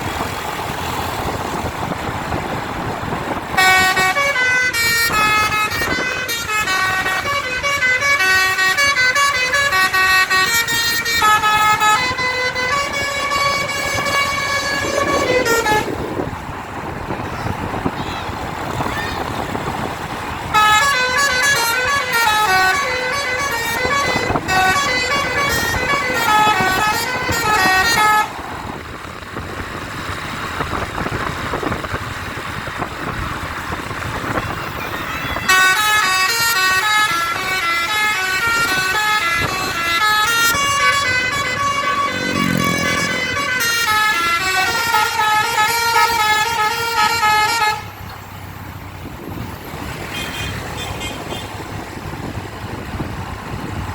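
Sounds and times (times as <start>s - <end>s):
bus engine and road noise: 0.0s - 53.9s
musical air horn melody: 3.6s - 16.0s, 20.5s - 28.3s, 35.2s - 47.8s.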